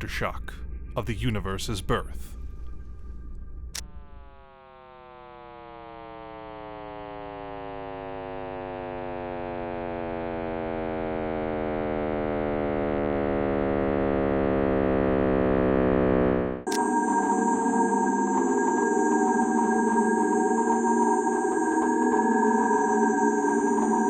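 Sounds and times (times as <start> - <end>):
deep low-pitched stacked tones: 0.0 - 4.4.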